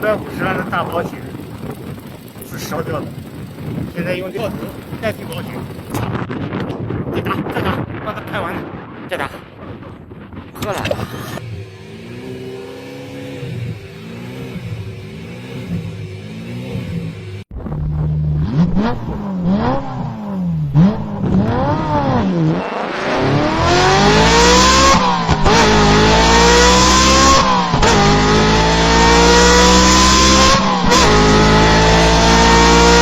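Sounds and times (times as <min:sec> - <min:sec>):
race car engine revving and accelerating: 0:11.0 - 0:33.0.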